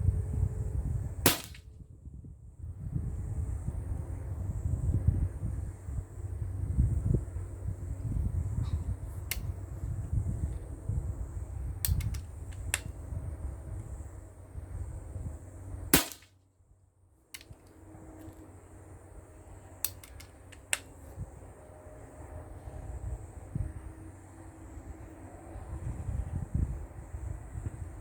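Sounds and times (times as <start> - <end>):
wind buffeting microphone: 0.0 - 16.0, 22.2 - 28.0
air rifle shot crack: 1.3 - 1.7, 16.0 - 16.3
light clicks: 19.8 - 20.9.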